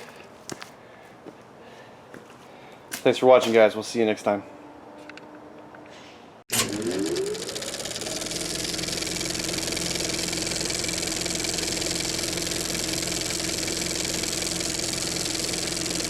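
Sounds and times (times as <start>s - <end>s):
lawn mower engine running: 6.5s - 16.0s.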